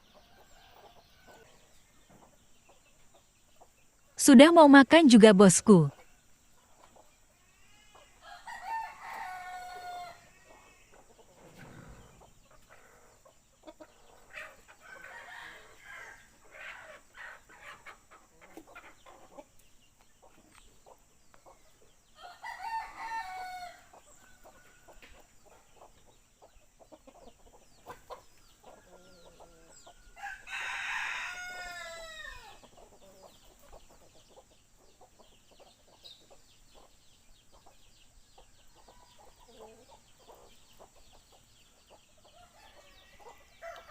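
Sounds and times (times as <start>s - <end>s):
chickens clucking: 0.0s - 43.9s
roosters crowing: 7.5s - 13.2s, 14.2s - 18.0s, 22.2s - 25.1s, 28.8s - 33.2s, 42.3s - 43.9s.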